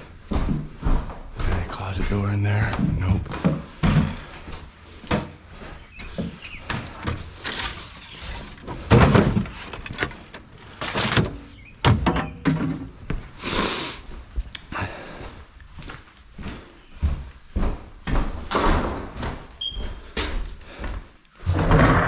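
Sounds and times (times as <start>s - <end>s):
debris thudding and clattering: 6.6s - 13.0s
hissing scrape: 6.7s - 11.4s.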